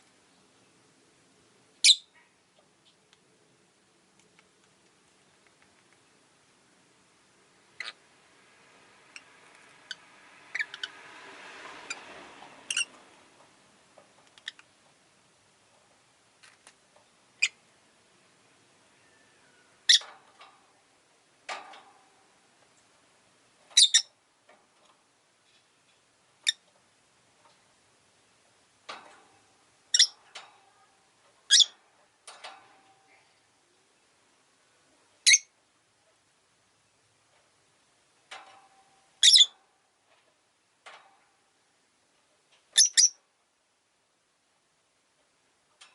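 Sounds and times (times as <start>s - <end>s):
lovebird chirping: 1.8s - 2.2s, 12.7s - 12.9s, 17.4s - 17.6s, 23.8s - 24.1s, 29.9s - 30.2s, 31.5s - 31.8s, 35.2s - 35.5s, 39.2s - 39.6s, 42.8s - 43.2s.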